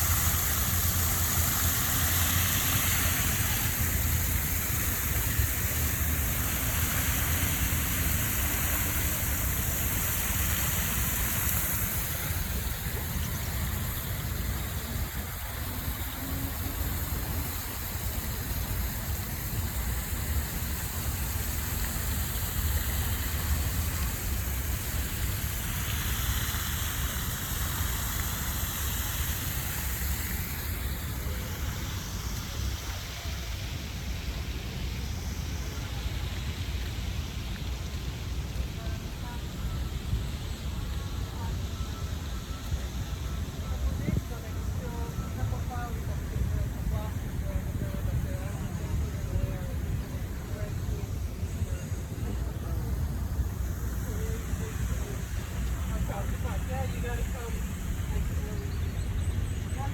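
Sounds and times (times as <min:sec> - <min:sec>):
steady rushing noise: 0:00.0 - 0:33.0.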